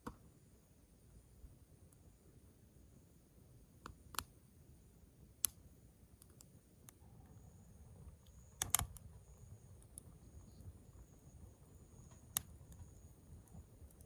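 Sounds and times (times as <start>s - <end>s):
campfire popping and crackling: 3.8s - 7.1s, 7.8s - 14.0s.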